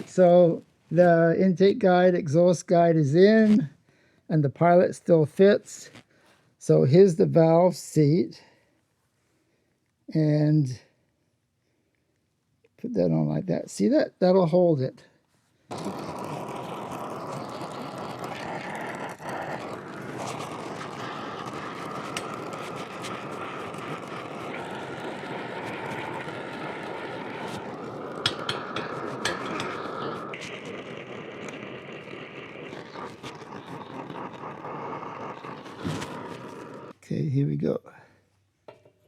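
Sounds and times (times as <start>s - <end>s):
steady rushing hiss: 19.0s - 36.9s.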